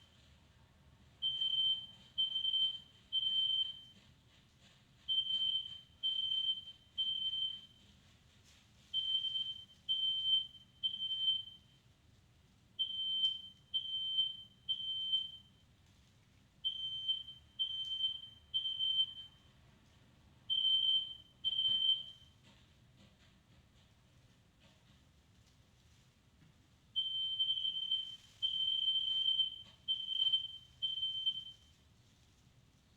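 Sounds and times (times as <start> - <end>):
smoke alarm beeping: 1.2 - 4.0, 5.1 - 7.8, 8.9 - 11.8, 12.8 - 15.6, 16.6 - 19.5, 20.5 - 22.4, 27.0 - 31.8.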